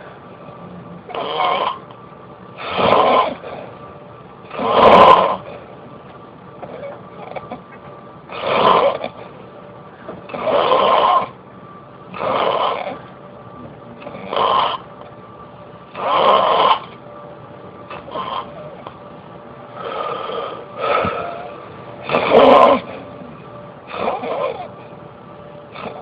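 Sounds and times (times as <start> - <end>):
faint steady hum: 0.0 - 26.0
person snoring: 1.1 - 1.8, 2.6 - 3.7, 4.5 - 5.6, 8.3 - 9.2, 10.3 - 11.4, 12.1 - 13.0, 14.0 - 14.8, 15.9 - 17.0, 17.9 - 18.8, 19.8 - 23.0, 23.9 - 24.7, 25.7 - 26.0.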